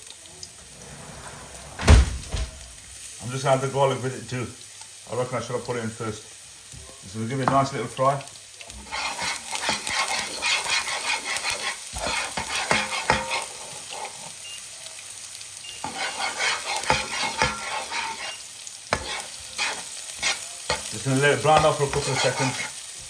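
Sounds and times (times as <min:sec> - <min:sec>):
onions sizzling in a pan: 0:00.0 - 0:00.8, 0:02.8 - 0:23.0
utensil scraping a pan: 0:08.7 - 0:14.4, 0:15.8 - 0:22.8.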